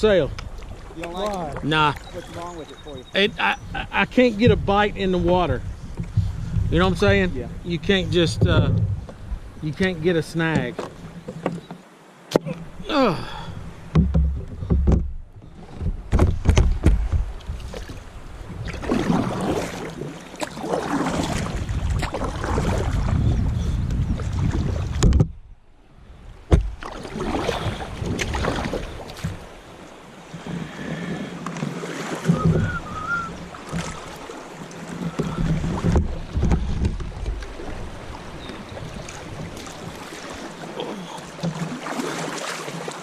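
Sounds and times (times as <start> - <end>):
wind buffeting microphone: 0.0 - 11.6, 20.7 - 25.5, 26.1 - 40.4
paddle strokes splashing in water: 0.4 - 3.1, 13.6 - 25.3, 26.4 - 43.0
sharp knocks: 13.9 - 15.2, 15.8 - 17.3.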